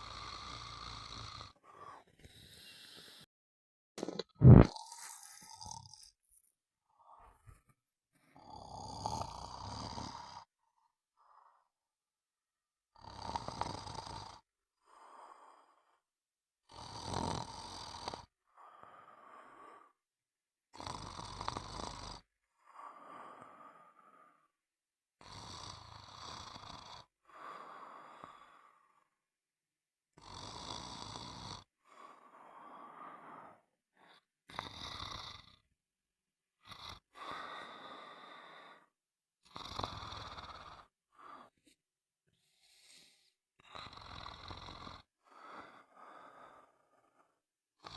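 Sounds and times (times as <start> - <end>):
person snoring: 0.0 - 3.3, 4.0 - 6.2, 8.4 - 10.5, 13.0 - 16.0, 16.7 - 20.0, 20.8 - 24.5, 25.2 - 29.1, 30.2 - 35.7, 36.6 - 41.6, 42.4 - 47.9.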